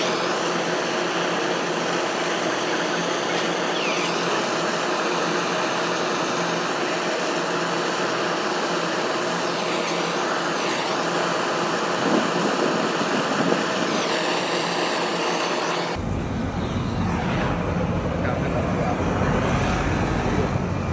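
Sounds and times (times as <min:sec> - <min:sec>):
low rumble: 0:16.0 - 0:20.9.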